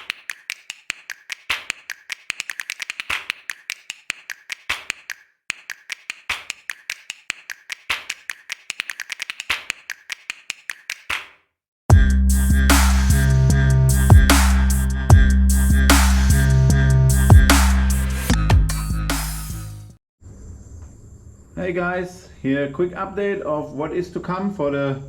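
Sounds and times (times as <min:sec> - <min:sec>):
rapid sharp clicks: 0:00.0 - 0:11.3.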